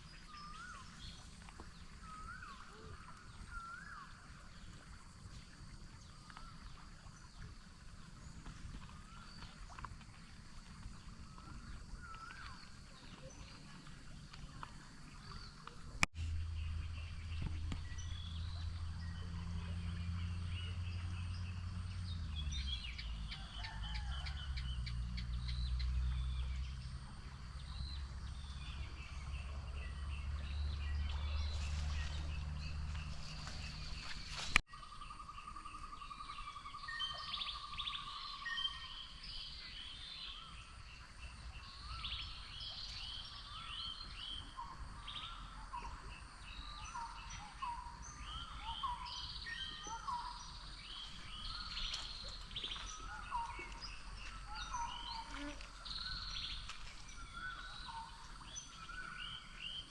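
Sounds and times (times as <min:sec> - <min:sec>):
low steady rumble: 0:00.0 - 0:34.6
birds chirping: 0:06.0 - 0:59.9.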